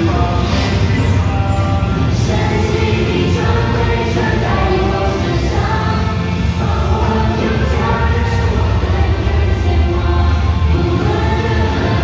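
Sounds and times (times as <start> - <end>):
heavy bass line: 0.0 - 12.0
musical theatre song: 0.0 - 12.0
voices singing sustained notes: 0.0 - 12.0.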